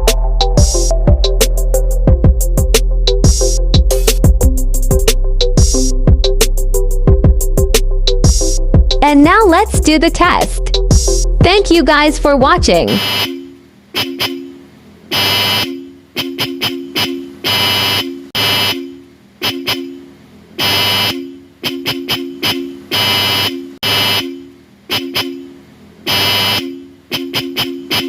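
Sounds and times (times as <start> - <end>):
electric car horn blasts: 12.9 - 28.0.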